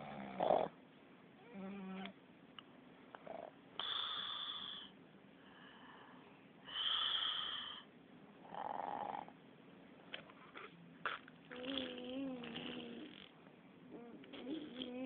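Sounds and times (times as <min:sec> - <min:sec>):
raspy snoring: 0:00.0 - 0:00.7, 0:08.5 - 0:09.3, 0:11.5 - 0:13.3, 0:14.0 - 0:15.0.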